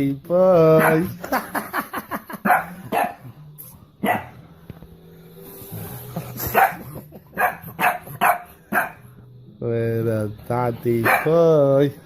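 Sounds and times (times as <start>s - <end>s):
dog barking: 0.8s - 1.2s, 2.4s - 3.3s, 4.0s - 4.4s, 6.5s - 9.1s, 11.0s - 11.4s.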